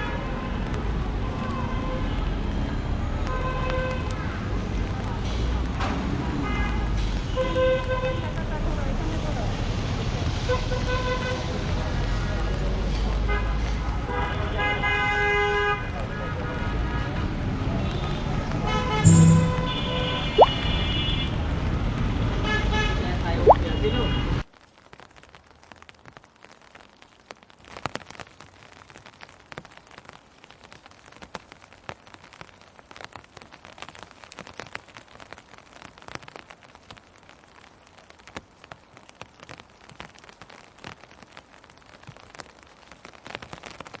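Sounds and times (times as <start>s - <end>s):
street noise: 0.0s - 24.4s
steady rain hissing: 0.1s - 13.1s, 23.0s - 44.0s.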